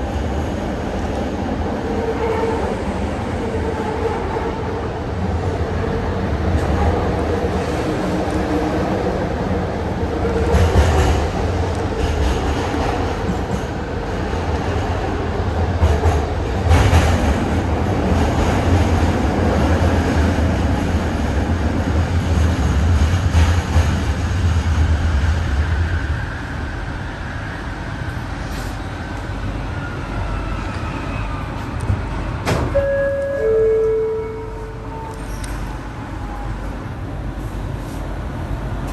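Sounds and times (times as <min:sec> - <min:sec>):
metro train rumbling: 0:00.0 - 0:38.9.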